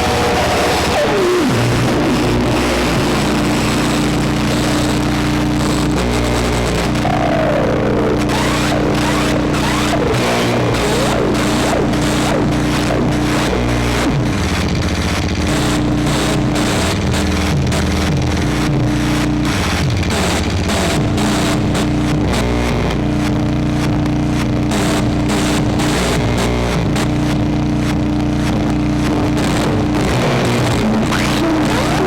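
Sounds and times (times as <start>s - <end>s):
synthesizer drone music: 0.0s - 19.6s
dense crackling clicks: 0.0s - 32.0s.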